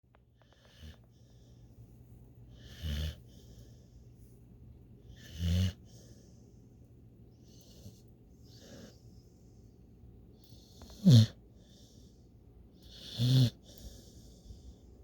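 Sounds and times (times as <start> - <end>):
puppy snoring: 0.4 - 1.5, 2.5 - 3.7, 5.0 - 6.2, 7.4 - 9.0, 10.4 - 11.9, 12.8 - 14.6.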